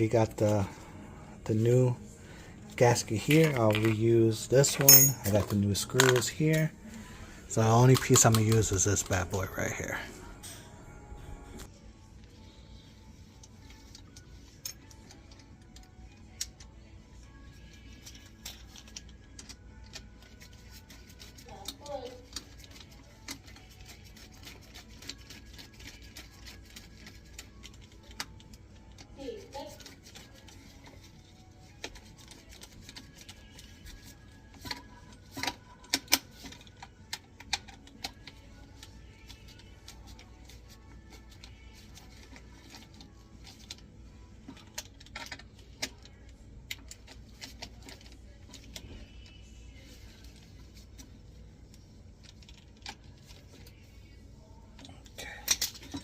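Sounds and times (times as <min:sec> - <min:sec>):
small metal parts clinking: 0:04.6 - 0:06.6
small parts clicking and tapping: 0:07.8 - 0:09.2, 0:34.4 - 0:39.7.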